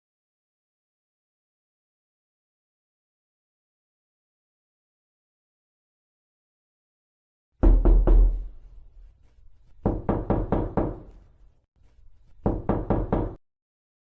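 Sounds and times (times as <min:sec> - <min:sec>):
knuckles knocking on wooden door: 0:07.6 - 0:08.5, 0:09.8 - 0:11.1, 0:12.4 - 0:13.4.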